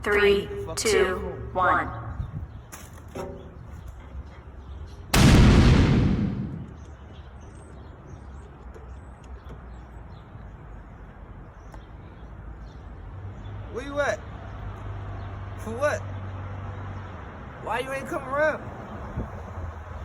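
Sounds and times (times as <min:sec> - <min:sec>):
explosion sound effect: 0:05.2 - 0:06.8.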